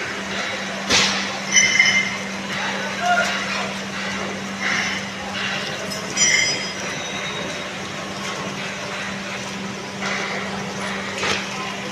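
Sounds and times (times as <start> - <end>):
train rumbling hum: 0.0 - 11.9
wheels squealing on rail: 1.4 - 9.3.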